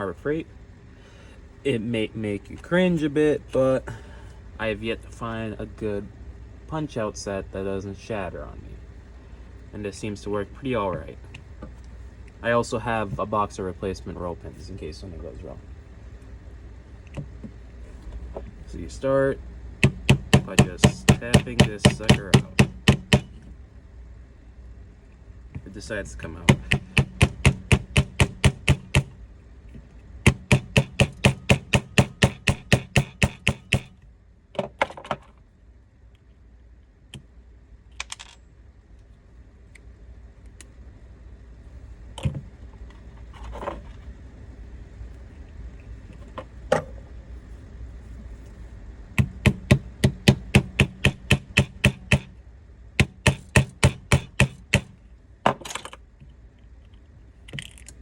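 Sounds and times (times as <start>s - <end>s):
hammer tapping on metal punch: 19.8s - 23.4s, 26.5s - 29.2s, 30.2s - 34.0s, 49.2s - 52.4s, 53.0s - 55.0s.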